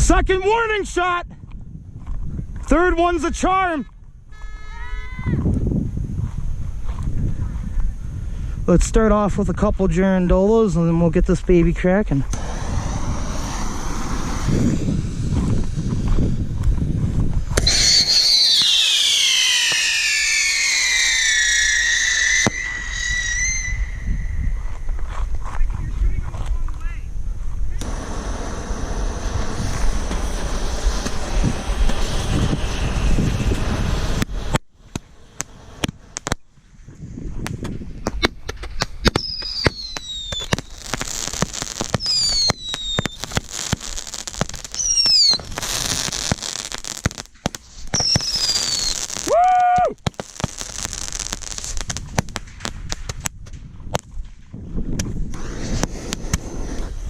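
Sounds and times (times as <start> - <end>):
fireworks pops and crackles: 1.4 - 57.0
fireworks rushing hiss: 11.5 - 25.7, 26.4 - 53.4, 55.0 - 57.0
falling firework whistles: 12.1 - 25.4, 27.8 - 36.4, 37.5 - 53.3, 55.0 - 57.0.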